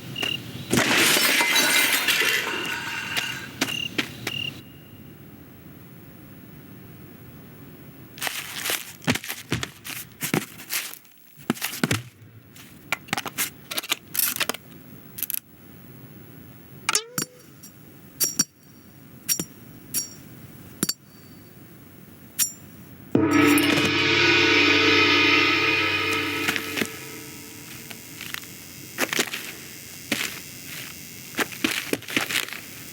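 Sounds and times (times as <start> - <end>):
sharp metallic pings: 23.2 - 28.2.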